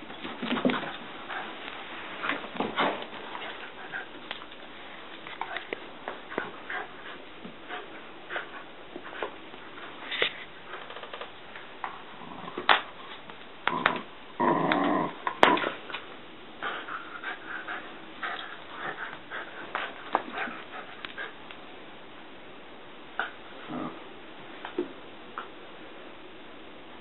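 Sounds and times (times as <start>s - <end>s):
dog making play noises: 0.2s - 11.0s, 16.6s - 21.5s.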